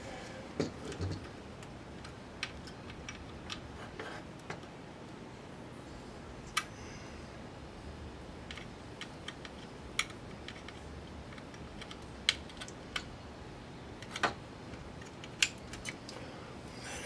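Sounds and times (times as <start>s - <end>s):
plastic parts clicking: 8.5s - 13.1s, 15.0s - 16.1s.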